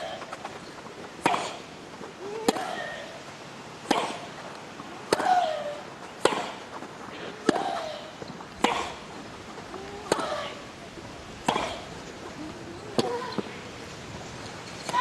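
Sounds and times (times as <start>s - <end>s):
tennis racket hitting ball: 1.2s - 1.6s, 2.4s - 3.0s, 3.8s - 4.4s, 5.1s - 6.6s, 7.4s - 9.2s, 9.8s - 10.6s, 11.4s - 12.0s, 13.0s - 13.5s.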